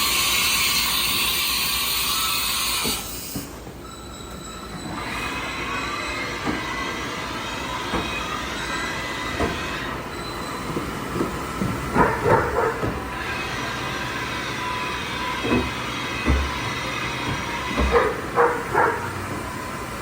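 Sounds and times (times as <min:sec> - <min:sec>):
machine knocks and clunks: 0:09.4 - 0:09.8, 0:10.8 - 0:13.2, 0:15.4 - 0:19.6.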